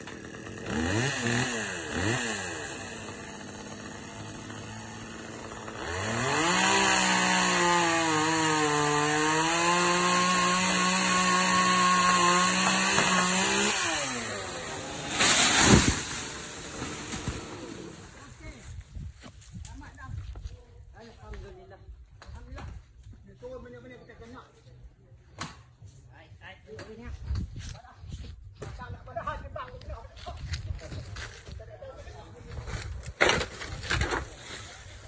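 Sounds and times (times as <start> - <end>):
chainsaw revving and cutting: 0.0 - 18.4.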